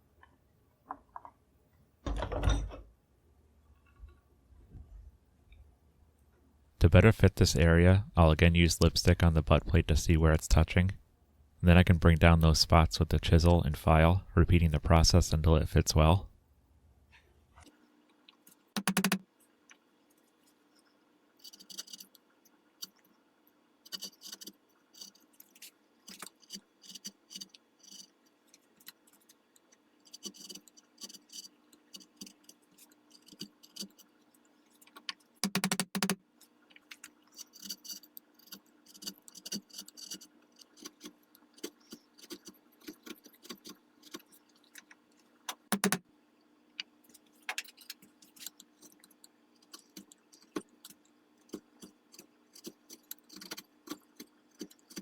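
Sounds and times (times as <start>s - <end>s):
chisel and file scraping wood: 23.9s - 28.2s, 30.1s - 34.1s, 37.4s - 44.3s.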